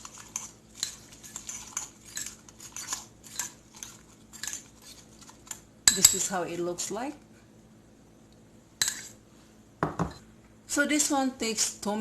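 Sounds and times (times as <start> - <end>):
utensil whisking egg in dish: 0.0 - 6.4.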